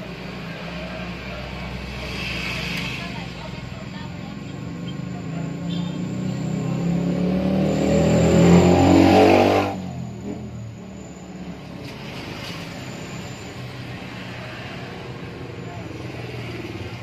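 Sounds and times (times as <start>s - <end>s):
engine revving: 0.0s - 10.5s.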